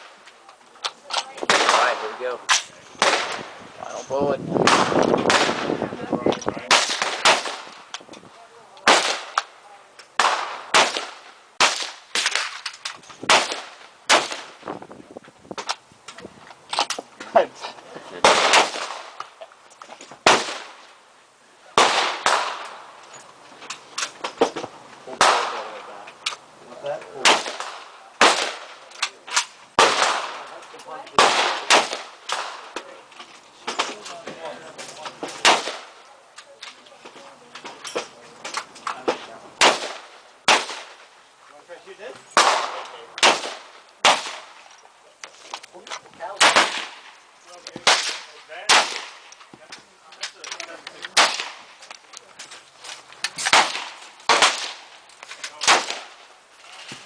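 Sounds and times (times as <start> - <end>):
gunshots echoing: 1.4 - 3.6, 4.6 - 5.8, 6.6 - 7.9, 8.8 - 9.5, 10.2 - 12.6, 13.2 - 14.6, 18.2 - 19.2, 20.2 - 20.9, 21.8 - 22.9, 25.2 - 25.9, 27.2 - 32.8, 35.4 - 36.0, 39.6 - 41.1, 42.4 - 44.6, 46.3 - 47.2, 47.8 - 49.3, 51.1 - 51.8, 53.4 - 55.0, 55.6 - 56.3.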